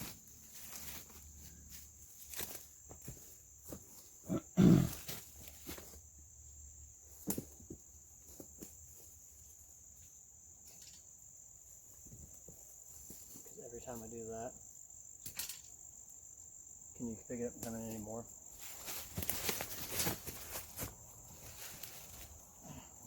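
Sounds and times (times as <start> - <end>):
insects chirring: 0.0 - 23.0.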